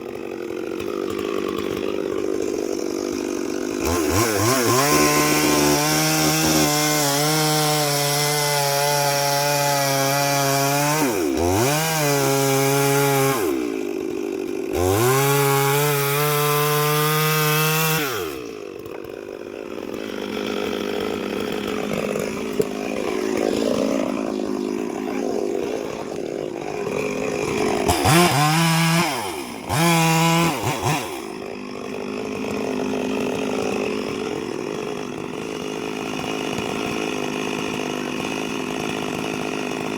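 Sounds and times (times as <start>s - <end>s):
chainsaw engine revving: 0.0s - 39.9s.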